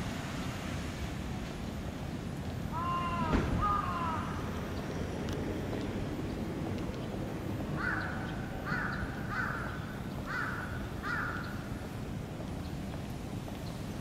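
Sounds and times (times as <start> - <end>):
crow cawing: 2.7 - 4.5, 7.8 - 11.6.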